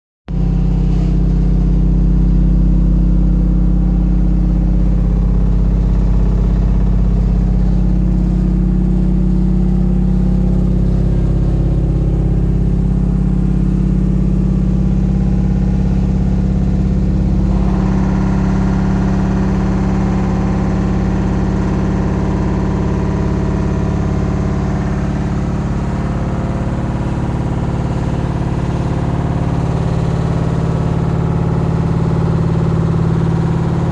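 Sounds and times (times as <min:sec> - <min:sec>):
washing machine spinning: 0:00.3 - 0:33.9
harsh noisy layer: 0:05.5 - 0:31.0.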